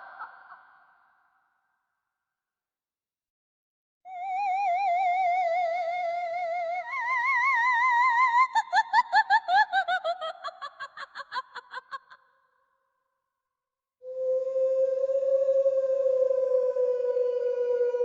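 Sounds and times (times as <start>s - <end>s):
rapid ghostly laugh: 8.4s - 12.2s
ghostly humming voice: 14.1s - 18.0s.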